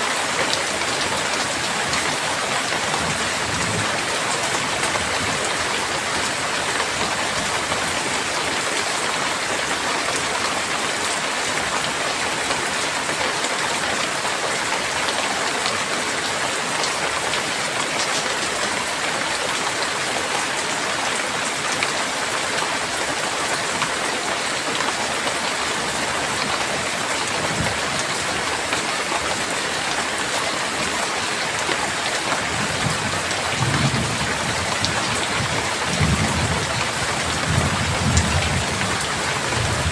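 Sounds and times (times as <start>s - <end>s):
heavy rain: 0.0s - 39.9s
low thunder rumbles: 32.6s - 39.9s.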